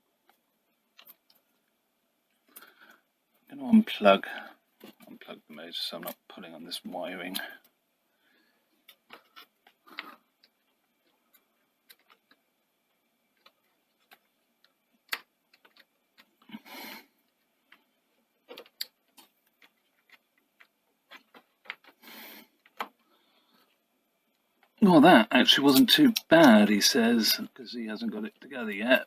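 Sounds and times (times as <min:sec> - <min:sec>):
small clicks and taps of hands: 0:13.3 - 0:16.6.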